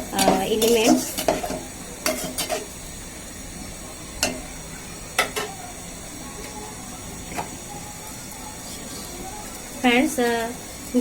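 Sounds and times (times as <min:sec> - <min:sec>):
spoon stirring in a pan: 0:00.0 - 0:03.0, 0:04.0 - 0:06.6
faint sizzle: 0:00.0 - 0:11.0
spoon knocking against metal pan: 0:04.2 - 0:04.4, 0:05.2 - 0:05.6.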